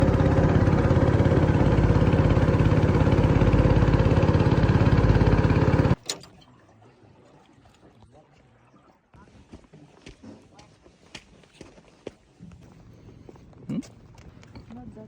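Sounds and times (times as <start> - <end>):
engine running: 0.0 - 6.0.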